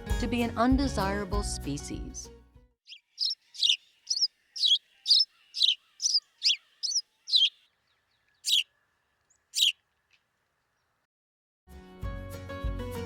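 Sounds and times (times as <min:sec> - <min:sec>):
sparrow chirping: 0:02.9 - 0:11.0.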